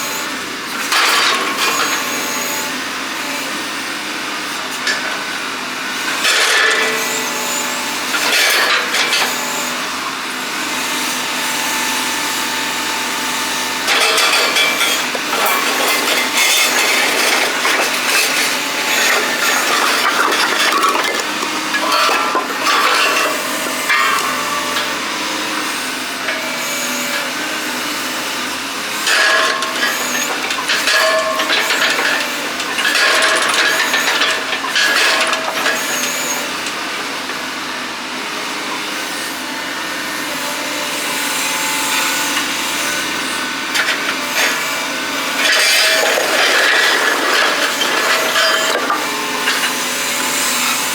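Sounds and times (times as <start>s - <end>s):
excavator rake scraping concrete: 0.0s - 2.7s, 6.0s - 9.9s, 13.4s - 37.4s, 40.9s - 50.9s.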